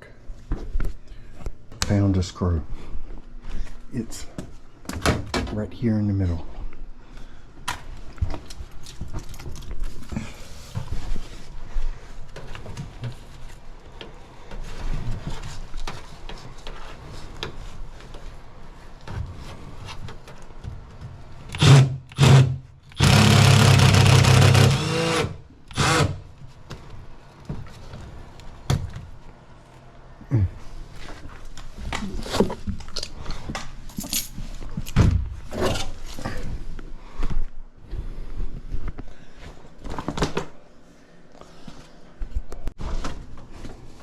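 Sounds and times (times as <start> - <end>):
cordless power driver running: 21.6 - 26.2.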